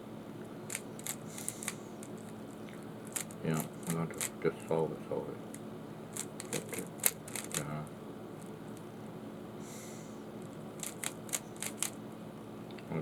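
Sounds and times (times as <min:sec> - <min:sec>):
plastic cube clicks: 0:06.2 - 0:07.6.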